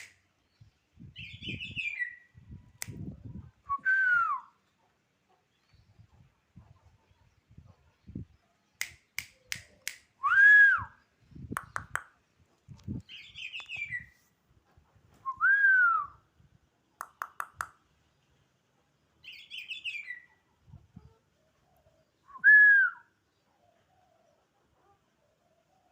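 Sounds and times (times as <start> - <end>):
oriole fluty whistles: 3.7 - 4.5, 10.2 - 11.0, 15.2 - 16.2, 22.3 - 23.1
sharp clicks: 8.8 - 10.1, 11.6 - 12.1, 17.0 - 17.8.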